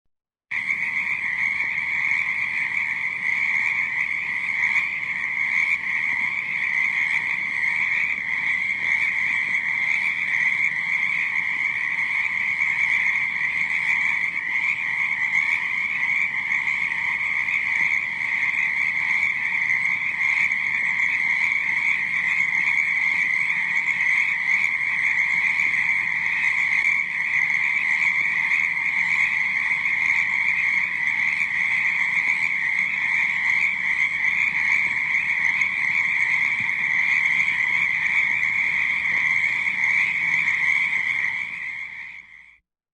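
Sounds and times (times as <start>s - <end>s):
frogs croaking chorus: 0.5s - 42.6s.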